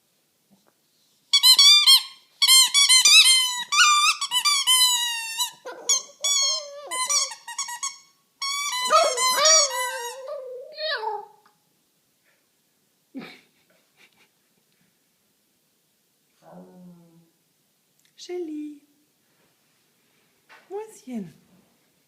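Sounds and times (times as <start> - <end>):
puppy whining and howling: 3.6 - 7.5, 8.6 - 11.5.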